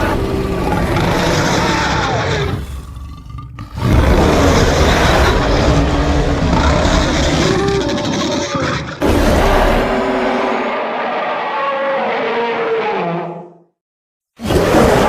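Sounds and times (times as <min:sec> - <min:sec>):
rough roaring with deep rumble: 0:00.0 - 0:08.2.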